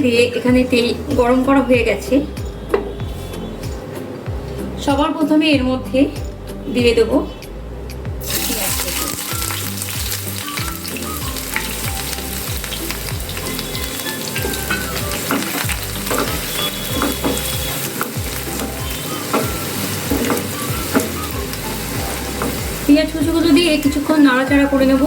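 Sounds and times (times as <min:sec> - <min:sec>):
onions sizzling in hot oil: 0:08.2 - 0:25.0.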